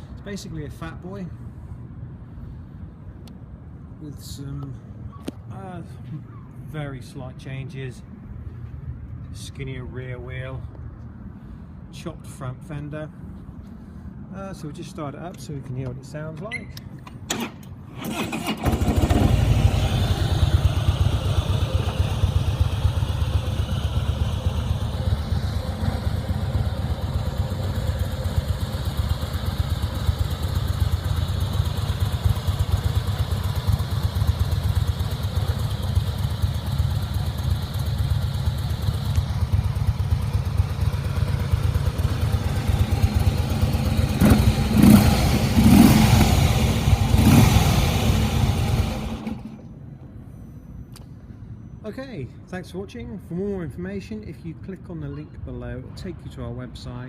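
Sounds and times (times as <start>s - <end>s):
electric starter: 17.3s - 20.2s
motorcycle engine idling: 18.4s - 49.8s
engine revving blips: 43.8s - 49.6s.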